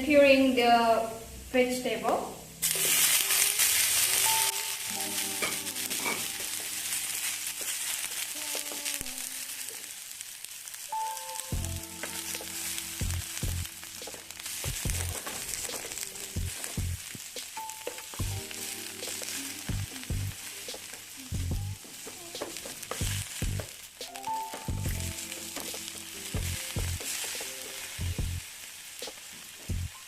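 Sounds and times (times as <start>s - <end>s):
vegetables sizzling in hot oil: 0.2s - 30.0s
spatula scraping pan: 2.6s - 8.2s.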